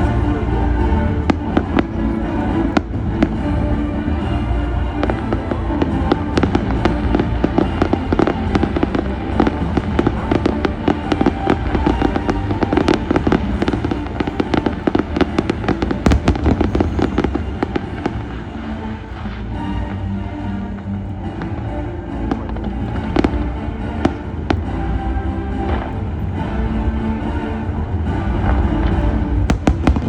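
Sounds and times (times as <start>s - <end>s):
fireworks bangs and crackles: 0.0s - 26.6s, 28.0s - 30.0s
music playing: 0.0s - 30.0s.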